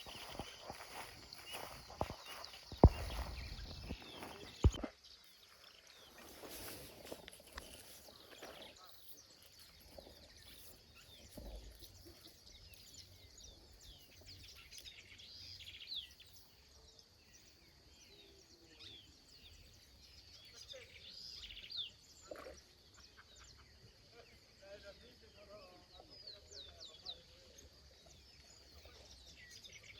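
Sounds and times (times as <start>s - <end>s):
bird chirps: 0.0s - 16.8s.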